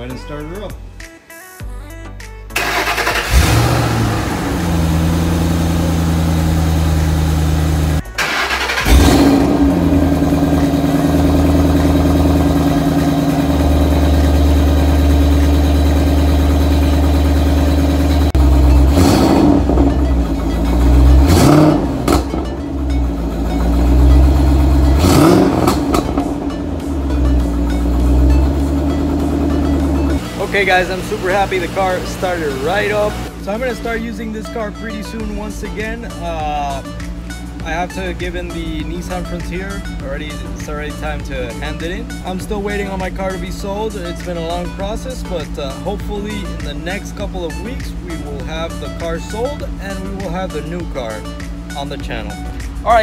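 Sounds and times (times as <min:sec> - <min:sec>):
car engine starting and idling: 0:02.5 - 0:53.0
engine revving: 0:02.6 - 0:37.2.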